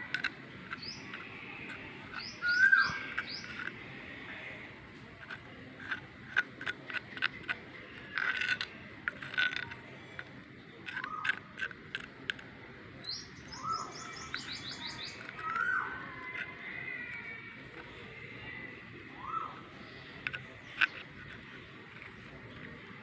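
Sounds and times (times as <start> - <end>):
birds chirping: 0.0 - 23.0.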